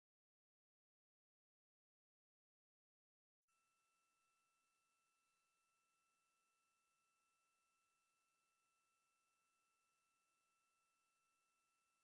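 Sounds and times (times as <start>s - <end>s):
faint steady tone: 3.5s - 12.0s.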